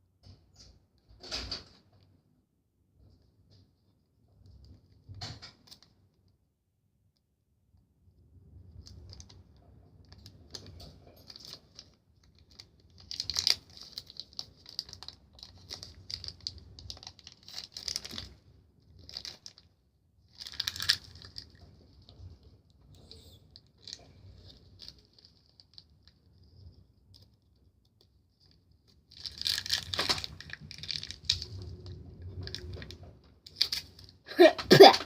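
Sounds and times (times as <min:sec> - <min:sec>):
plastic bag crinkling: 0:10.5 - 0:18.4, 0:19.0 - 0:19.7, 0:20.4 - 0:21.6, 0:29.1 - 0:32.9, 0:33.5 - 0:35.0.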